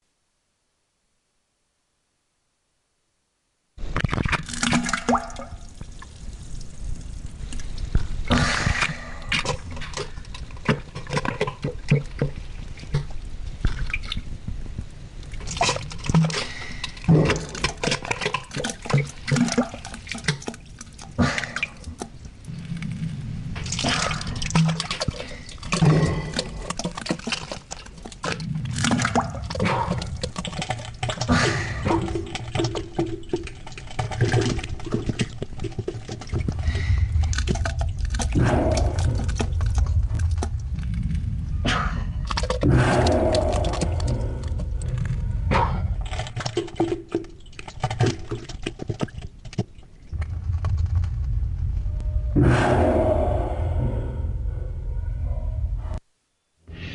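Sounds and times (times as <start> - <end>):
wet splattering and plopping: 4.0 - 6.8, 15.3 - 22.1, 23.6 - 40.6, 42.2 - 44.8, 46.0 - 49.8.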